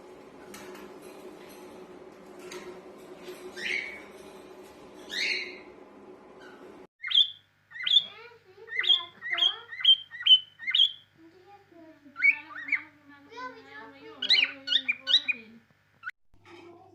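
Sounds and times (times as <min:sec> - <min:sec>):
steady low hum: 0:00.0 - 0:09.1
cockatiels chirping: 0:03.5 - 0:04.1, 0:05.1 - 0:05.7, 0:06.4 - 0:11.0, 0:12.2 - 0:12.9, 0:14.2 - 0:15.5.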